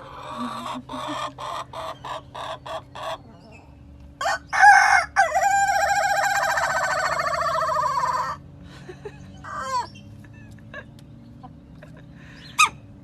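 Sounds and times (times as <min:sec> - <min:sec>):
rooster crowing: 0:04.2 - 0:08.4, 0:09.4 - 0:09.9.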